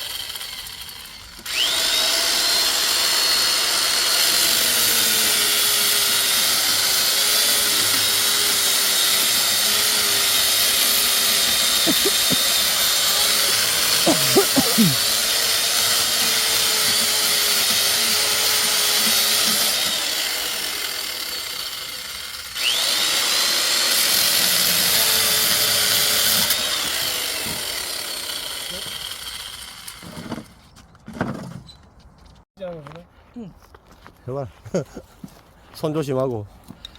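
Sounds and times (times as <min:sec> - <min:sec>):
power tool motor whining: 0:00.0 - 0:30.5.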